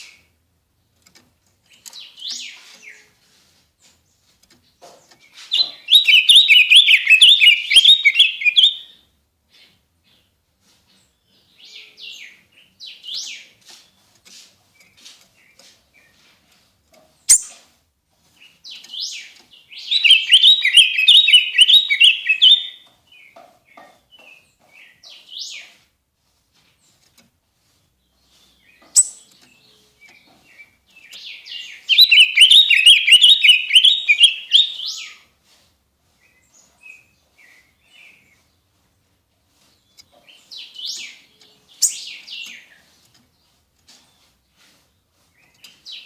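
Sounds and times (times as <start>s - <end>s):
songbird singing: 1.0s - 3.2s, 3.8s - 10.3s, 10.9s - 16.4s, 17.2s - 25.8s, 28.0s - 35.3s, 36.2s - 46.0s
bird chips: 17.3s - 22.9s, 28.2s - 35.2s, 39.6s - 46.0s.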